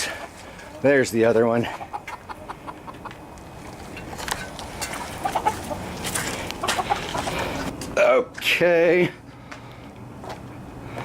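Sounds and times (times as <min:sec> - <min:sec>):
hen clucking: 0:00.0 - 0:07.7.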